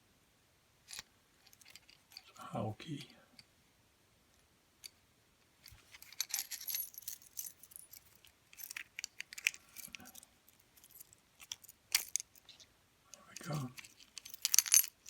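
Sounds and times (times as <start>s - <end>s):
key rattling in padlock: 6.1s - 10.2s, 10.8s - 12.6s, 13.7s - 15.0s.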